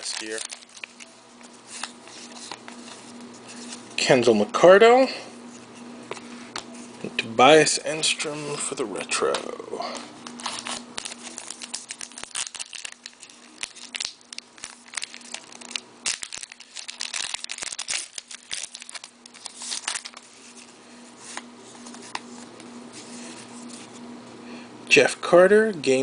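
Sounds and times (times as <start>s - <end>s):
wrapper crinkling and tearing: 0.0s - 1.1s, 10.2s - 20.3s
cards being handled: 0.0s - 4.0s, 8.4s - 24.1s.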